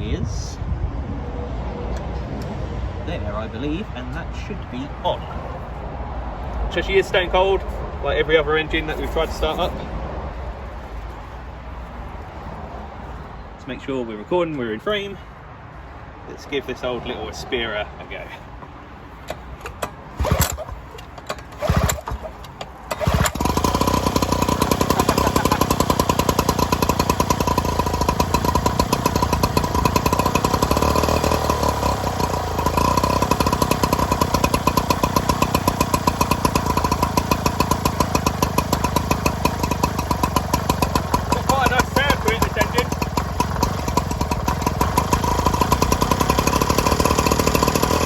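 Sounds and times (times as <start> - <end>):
two-stroke engine running: 19.3 - 48.0.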